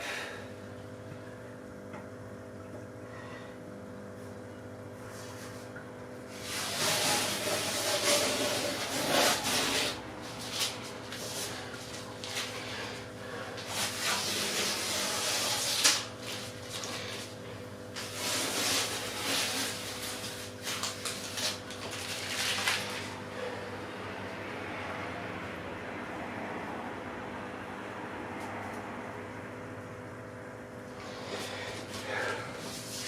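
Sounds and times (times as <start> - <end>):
tape peeling off glass: 6.3 - 12.6, 13.7 - 17.2, 18.0 - 23.1.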